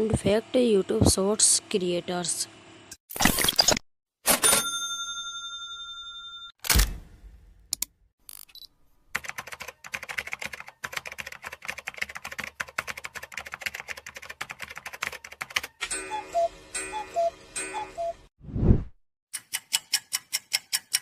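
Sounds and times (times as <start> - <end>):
rapid keyboard typing clicks: 9.2 - 15.9
clock ticking: 19.4 - 21.0.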